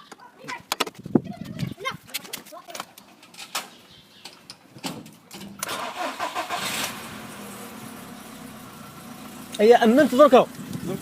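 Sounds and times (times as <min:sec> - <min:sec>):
car engine starting and idling: 0:05.3 - 0:11.0.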